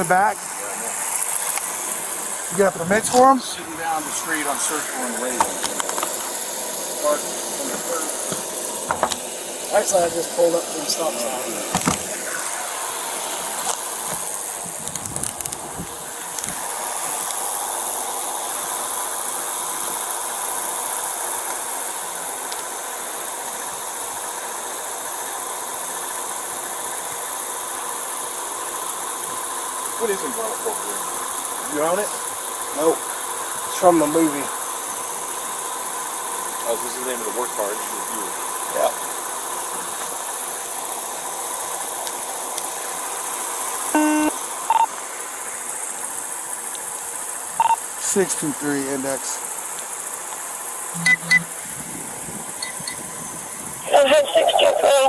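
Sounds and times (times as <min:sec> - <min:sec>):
steady hiss: 0:00.0 - 0:55.0
vehicle engine idling: 0:00.0 - 0:55.0
short buzzing tone: 0:43.9 - 0:44.9, 0:50.9 - 0:51.6
high radio beeps: 0:44.0 - 0:44.9, 0:47.6 - 0:47.8, 0:51.0 - 0:51.6, 0:52.6 - 0:53.0, 0:53.9 - 0:55.0.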